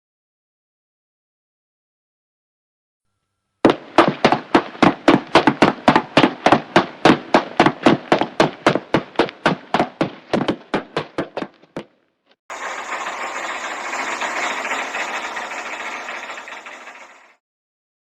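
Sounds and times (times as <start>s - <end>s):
clothes dryer knocking rhythmically: 3.7s - 11.4s.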